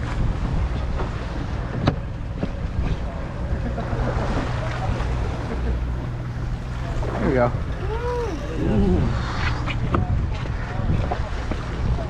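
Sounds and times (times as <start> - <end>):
boat engine humming: 2.0 - 9.8
sea wash: 3.4 - 9.6.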